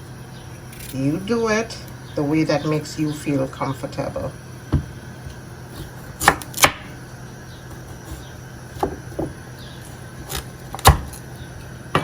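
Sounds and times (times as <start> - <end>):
knife clicking on vegetables: 10.3 - 11.2.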